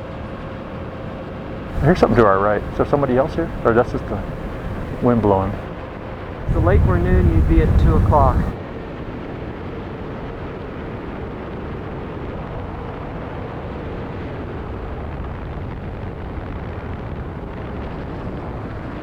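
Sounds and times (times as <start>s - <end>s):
faint low hum: 1.7s - 5.7s, 6.5s - 8.6s
wind rumbling on microphone: 1.7s - 5.7s, 6.4s - 8.6s.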